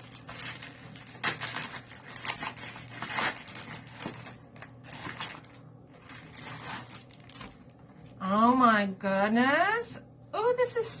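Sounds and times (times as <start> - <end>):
packaging crinkling and rustling: 0.0 - 8.2.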